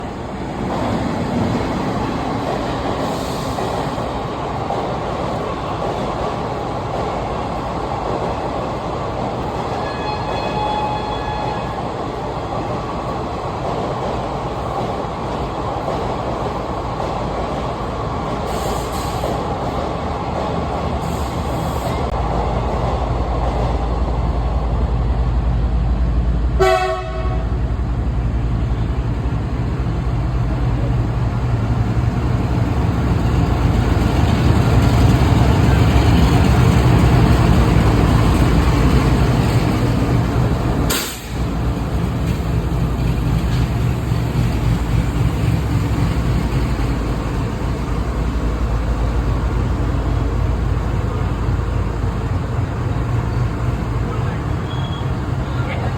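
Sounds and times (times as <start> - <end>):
train wheels rumbling on rails: 0.0 - 55.9
train horn toot: 9.8 - 11.8, 26.6 - 27.6.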